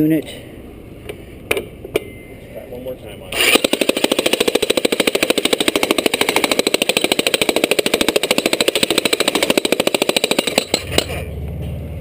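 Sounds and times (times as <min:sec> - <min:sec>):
jackhammer hammering rock: 0:03.4 - 0:11.2.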